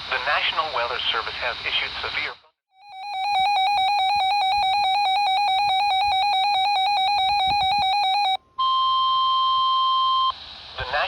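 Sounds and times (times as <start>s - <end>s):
warbling electronic alarm tone: 2.8s - 8.4s.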